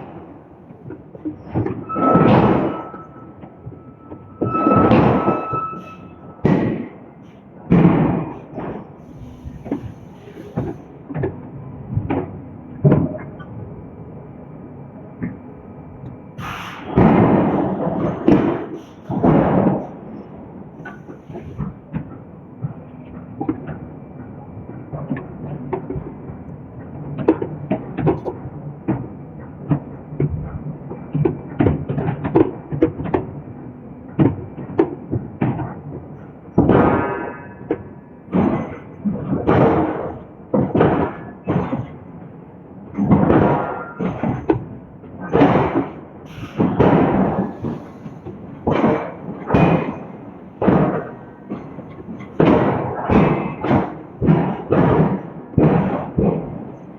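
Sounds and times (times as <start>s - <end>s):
forging hammer heavy blows: 1.2s - 7.0s, 45.2s - 56.9s
metallic ring: 1.8s - 6.4s.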